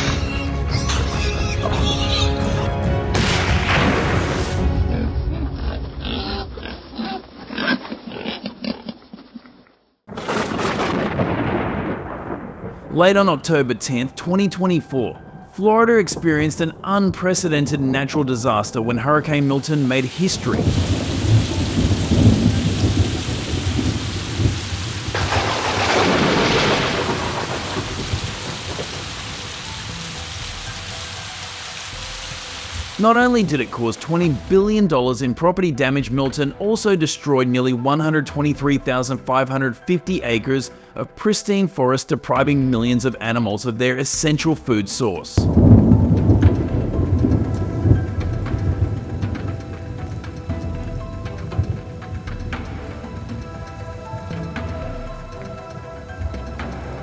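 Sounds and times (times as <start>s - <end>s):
heavy rain: 0.0s - 5.9s, 10.1s - 13.4s, 19.2s - 34.8s, 45.4s - 57.0s
background music: 0.0s - 6.4s, 12.8s - 23.9s, 25.2s - 57.0s
thunder rumbling: 2.8s - 6.8s, 10.1s - 14.2s, 19.5s - 34.8s, 45.4s - 57.0s
wild boars grunting and squealing: 4.8s - 9.6s.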